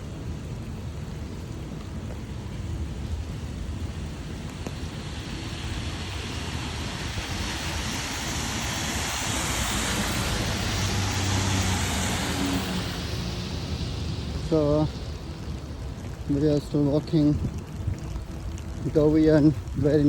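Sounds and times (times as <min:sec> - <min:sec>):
steady rain: 0:00.0 - 0:20.0
tyres hissing on wet road: 0:00.0 - 0:20.0
car engine hum: 0:03.8 - 0:16.3.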